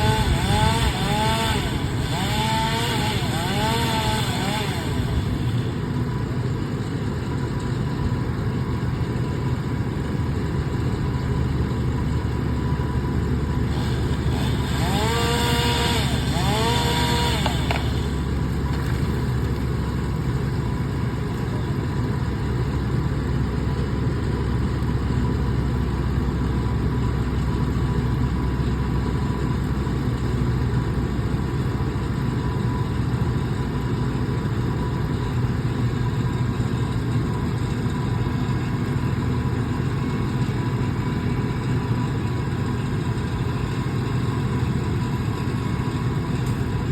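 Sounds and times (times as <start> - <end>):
machine engine running: 0.0 - 8.8, 9.6 - 22.8.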